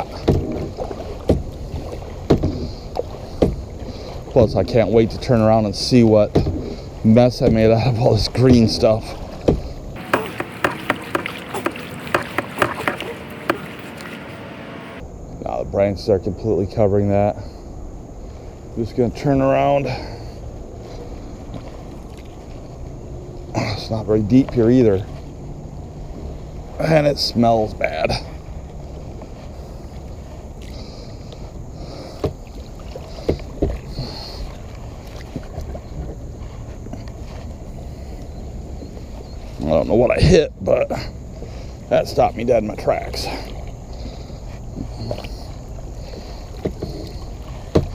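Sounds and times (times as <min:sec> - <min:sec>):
kayak paddling through water: 0:00.0 - 0:04.3, 0:10.0 - 0:15.0, 0:28.5 - 0:39.6, 0:43.3 - 0:47.9
kayak knocking underwater object: 0:10.0 - 0:15.0
paddle swishing water: 0:10.0 - 0:15.0, 0:32.4 - 0:38.0, 0:46.0 - 0:47.9.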